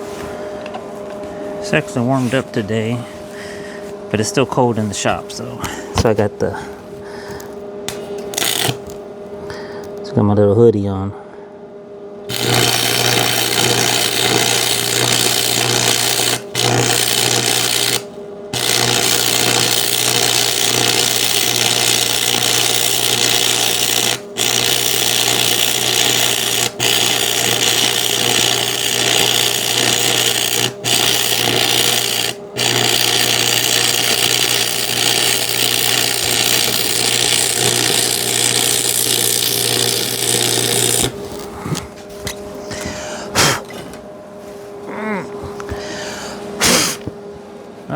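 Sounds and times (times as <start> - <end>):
arc welding hiss and buzz: 7.3 - 10.0, 12.2 - 43.7, 46.6 - 47.2.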